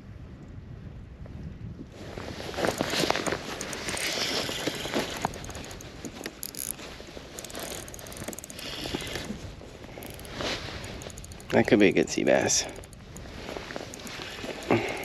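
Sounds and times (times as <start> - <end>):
wind noise on microphone: 0.0 - 15.0
fishing reel clicking and rattling: 2.6 - 15.0.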